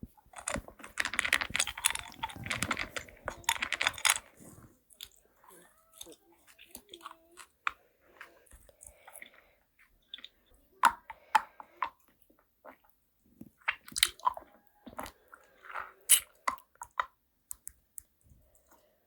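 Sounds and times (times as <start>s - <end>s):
person biting and chewing food: 13.5s - 17.1s.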